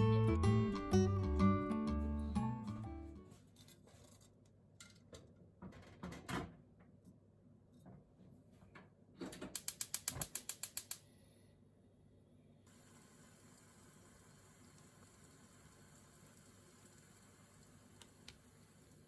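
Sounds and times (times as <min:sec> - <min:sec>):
ratcheting clicks: 0:09.6 - 0:11.0.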